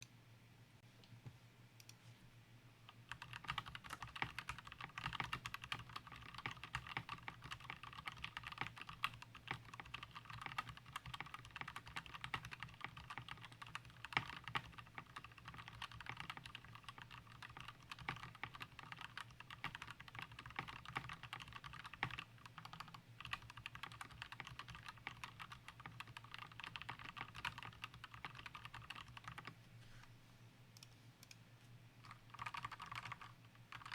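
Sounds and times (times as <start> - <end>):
mechanical keyboard typing: 3.0 - 29.5, 32.0 - 33.9.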